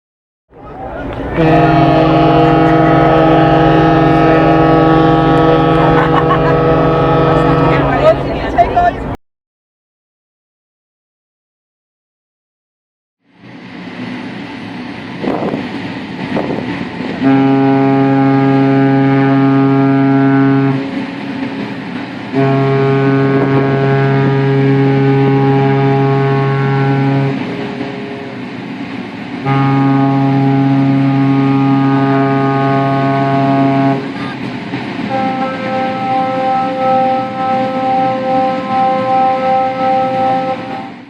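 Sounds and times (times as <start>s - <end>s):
ship's horn long blasts: 0.5s - 9.2s, 16.5s - 28.6s, 29.4s - 41.0s
higher-pitched horn tone: 0.7s - 9.2s, 22.4s - 28.1s, 29.4s - 34.1s, 35.1s - 41.0s.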